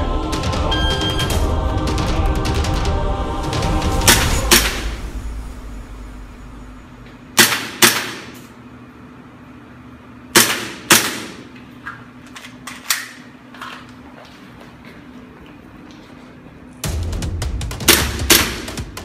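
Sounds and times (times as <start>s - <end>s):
airsoft pistol shots: 7.4s - 8.4s, 10.3s - 11.5s, 17.9s - 18.8s.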